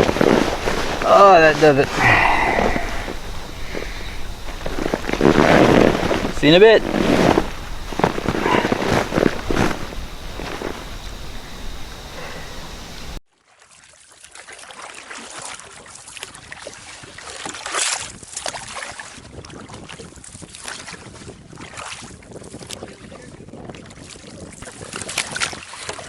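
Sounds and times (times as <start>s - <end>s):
steady rushing noise: 0.0s - 13.2s
wind on microphone: 0.0s - 13.2s, 18.0s - 26.0s
waves lapping against canoe hull: 0.0s - 26.0s.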